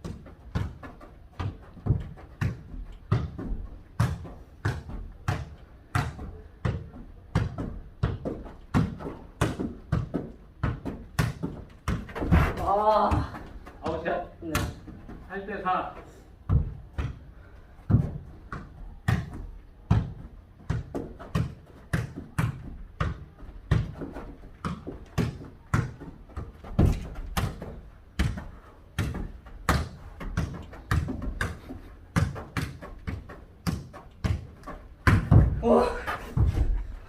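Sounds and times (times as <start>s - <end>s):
ball kicked and bouncing: 0.0s - 15.8s, 16.4s - 37.0s.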